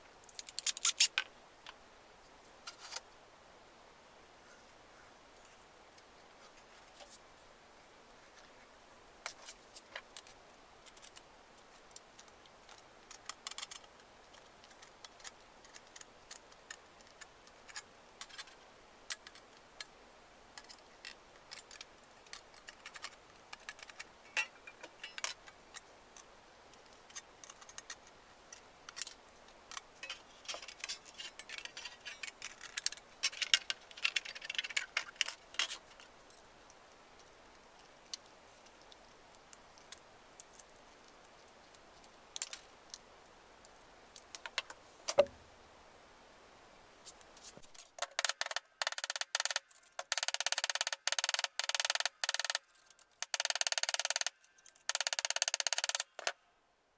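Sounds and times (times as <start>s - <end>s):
tools clicking and clinking: 20.6s - 36.4s.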